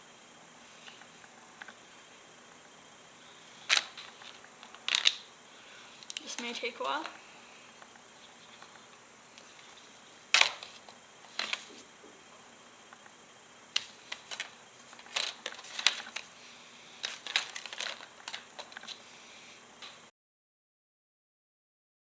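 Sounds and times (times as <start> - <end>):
sharp plastic clicks and crackles: 3.7 - 5.3, 10.4 - 11.6, 13.7 - 16.3, 17.0 - 19.0.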